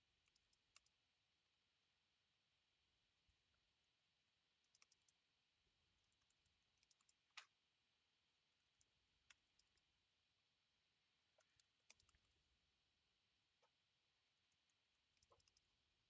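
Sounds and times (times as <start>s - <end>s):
faint small clicks: 0.2s - 1.0s, 4.6s - 5.2s, 6.0s - 7.6s, 8.8s - 9.9s, 11.4s - 12.4s, 14.5s - 15.7s.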